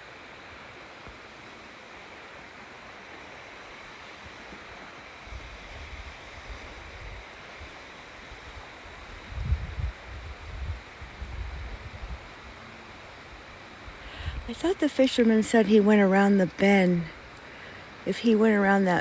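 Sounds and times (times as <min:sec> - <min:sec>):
wind buffeting microphone: 0:08.5 - 0:12.6.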